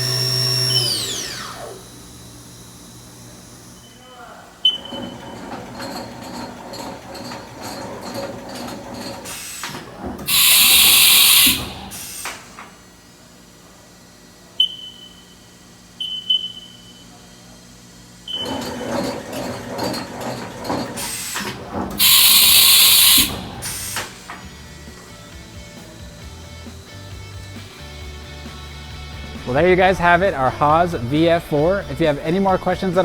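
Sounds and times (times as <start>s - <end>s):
short high beeps: 10.3s - 12.0s, 22.0s - 23.9s
loud bursts of hiss: 10.3s - 12.5s, 22.0s - 24.3s.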